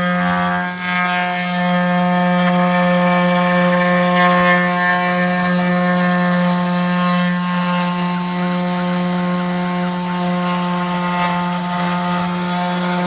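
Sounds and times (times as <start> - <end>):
router spindle cutting: 0.0 - 13.0.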